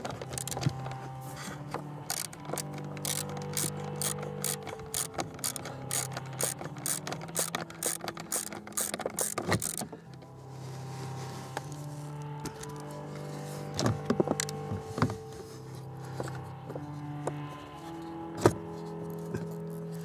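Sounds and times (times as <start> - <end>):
hand tool clicking: 0.0 - 1.0, 2.0 - 10.3.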